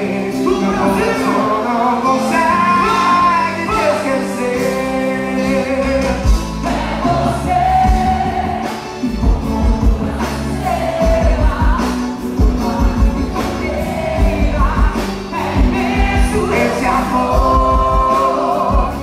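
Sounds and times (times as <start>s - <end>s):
band accompaniment: 0.0s - 19.0s
sliding sung melody: 0.0s - 19.0s
bass drum beats: 6.0s - 19.0s.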